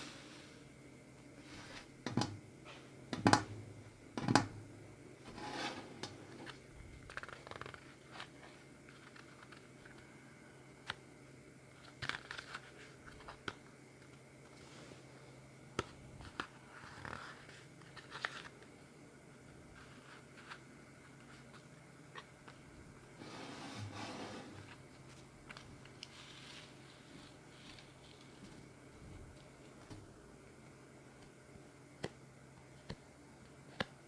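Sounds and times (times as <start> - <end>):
package clicks and rustling: 6.4 - 10.1, 11.7 - 14.2.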